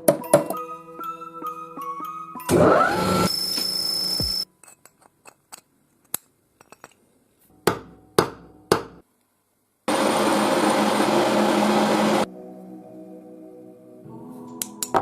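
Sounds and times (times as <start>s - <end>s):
power tool running: 2.5s - 4.4s, 9.9s - 12.3s.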